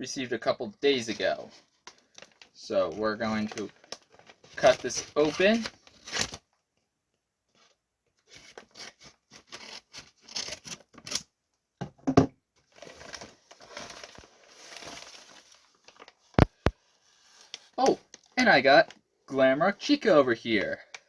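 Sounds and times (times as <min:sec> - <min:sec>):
packaging tearing and crinkling: 0:03.3 - 0:06.4, 0:08.3 - 0:11.2, 0:12.7 - 0:16.7.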